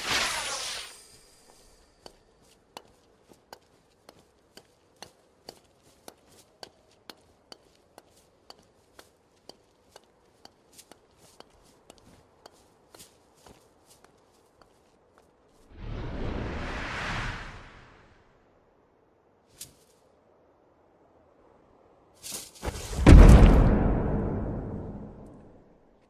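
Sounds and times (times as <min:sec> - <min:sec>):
faint clicking footsteps: 0:01.8 - 0:15.6.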